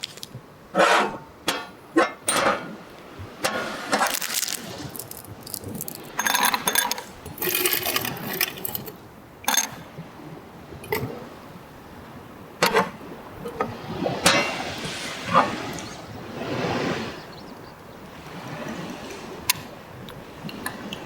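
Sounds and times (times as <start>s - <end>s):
ice and glass clinking: 4.1s - 9.8s.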